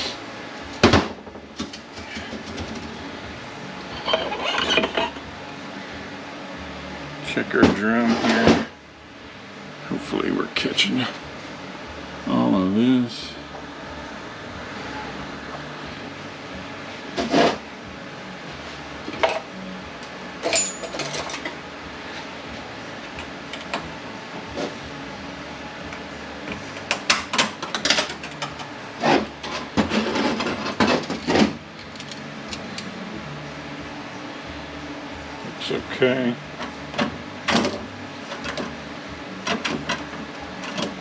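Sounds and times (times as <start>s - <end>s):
metal parts clinking: 3.9s - 5.2s, 20.4s - 21.6s, 26.9s - 28.7s, 31.8s - 32.9s.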